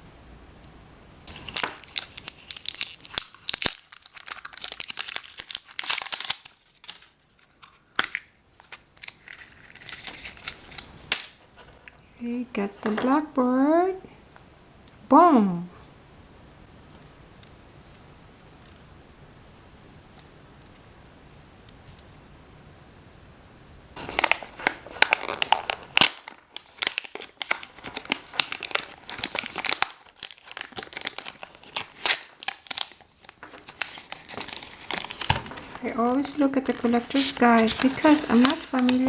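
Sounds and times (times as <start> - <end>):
plastic packaging being torn open: 1.3 - 12.0, 24.0 - 39.0
faint hum: 7.3 - 26.6.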